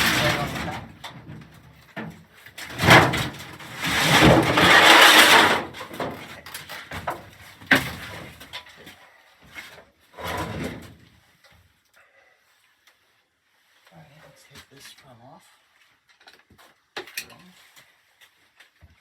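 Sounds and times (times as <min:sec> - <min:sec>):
sheet metal scraping: 0:00.0 - 0:00.9, 0:02.7 - 0:06.1.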